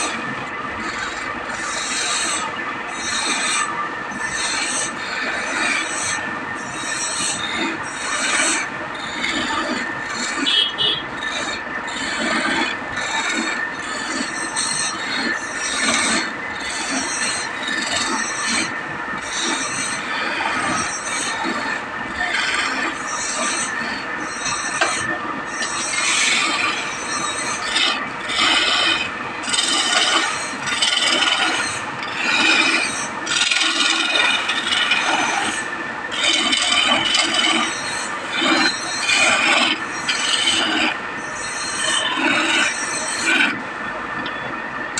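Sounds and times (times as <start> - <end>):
hand tool scraping wood: 24.4 - 43.6.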